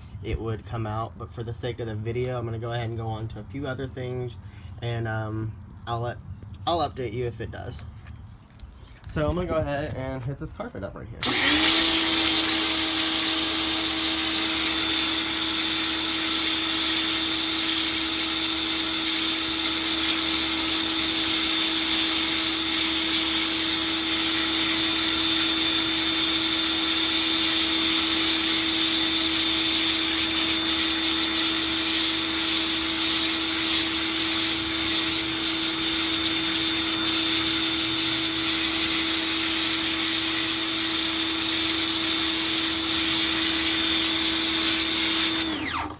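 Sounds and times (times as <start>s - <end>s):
pressure washer pump humming: 11.2s - 45.9s
water jet hissing on carpet: 11.2s - 45.9s.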